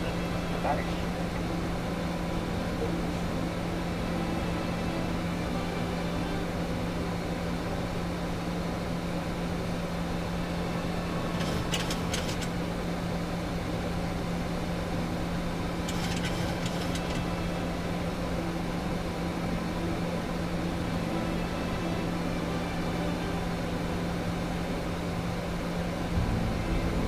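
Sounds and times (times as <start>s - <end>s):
cockpit hum and air rush: 0.0s - 20.8s.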